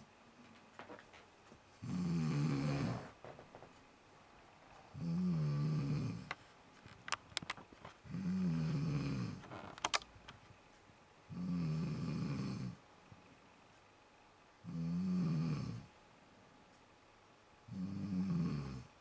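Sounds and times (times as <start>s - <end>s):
quiet breaths: 0.0s - 7.0s, 7.8s - 9.7s, 10.4s - 19.0s
snoring: 1.8s - 3.2s, 4.9s - 6.3s, 8.0s - 9.5s, 11.3s - 12.8s, 14.6s - 15.9s, 17.7s - 18.9s
sharp clicks: 9.7s - 10.4s.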